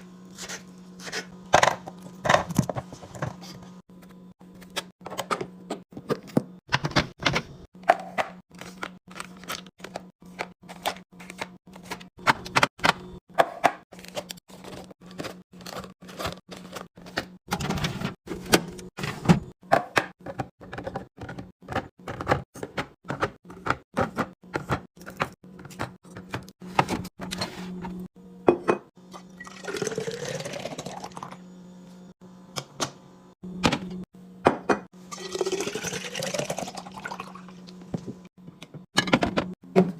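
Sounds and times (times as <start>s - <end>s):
liquid pouring into container: 29.4s - 31.4s, 35.1s - 37.6s.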